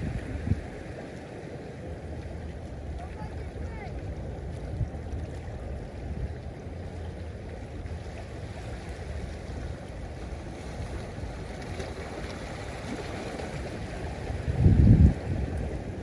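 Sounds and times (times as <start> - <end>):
wind on microphone: 0.0 - 1.1, 8.8 - 16.0
ocean waves washing in: 0.0 - 16.0.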